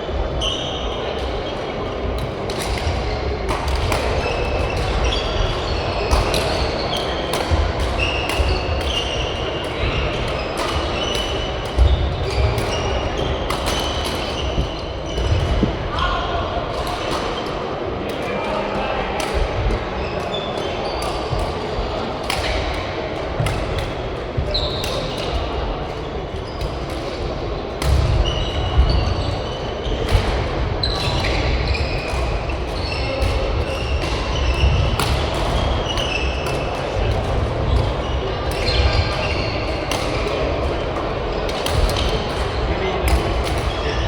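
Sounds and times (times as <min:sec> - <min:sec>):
shoes squeaking on court floor: 0:03.9 - 0:16.0, 0:30.8 - 0:37.0, 0:37.7 - 0:40.7.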